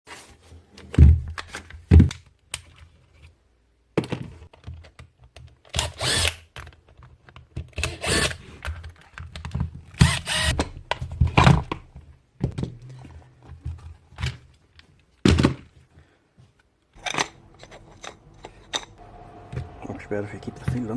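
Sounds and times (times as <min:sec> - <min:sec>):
rattling and scraping: 0:17.0 - 0:19.8.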